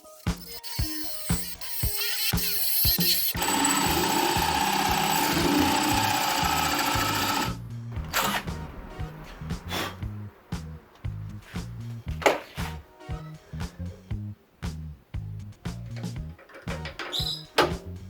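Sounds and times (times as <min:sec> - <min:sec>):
background music with beat: 0:00.0 - 0:18.0
power drill whining into wood: 0:00.7 - 0:07.6.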